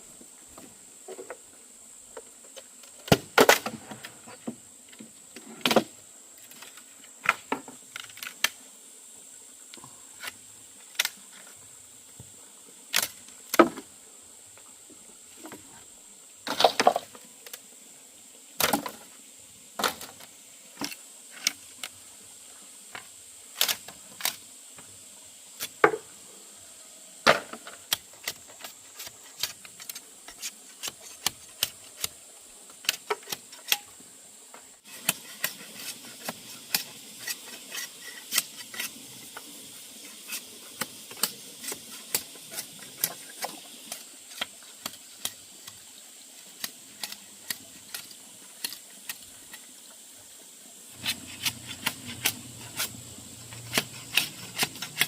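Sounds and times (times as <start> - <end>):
faint high hiss: 0.0 - 55.0.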